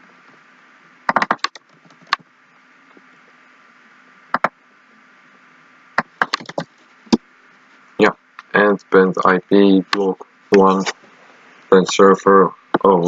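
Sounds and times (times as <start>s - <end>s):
faint electrical hum: 0.0s - 13.0s
keyboard typing: 1.1s - 2.2s, 6.0s - 6.7s.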